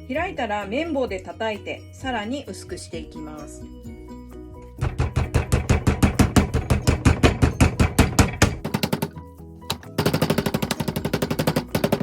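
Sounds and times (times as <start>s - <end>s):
rolling pin pounding chicken: 4.8s - 12.0s.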